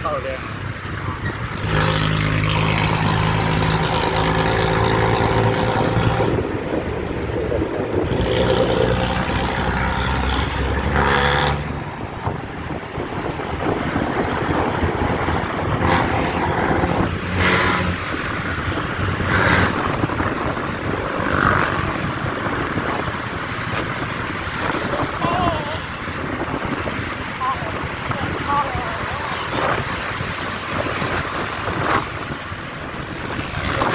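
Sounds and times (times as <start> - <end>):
road traffic noise: 0.0 - 33.9
bus exhaust raspy drone: 1.1 - 28.0.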